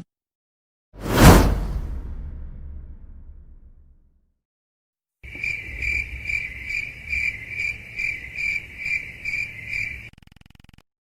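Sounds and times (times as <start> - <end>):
cricket chirping: 5.2 - 10.8.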